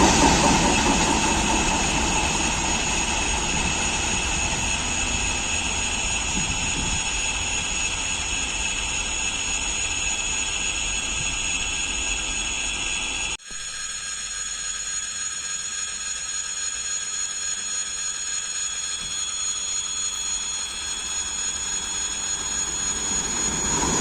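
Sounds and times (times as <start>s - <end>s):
train rumble and rail noise: 0.0s - 8.4s, 20.9s - 24.0s
high steady whine: 0.0s - 24.0s.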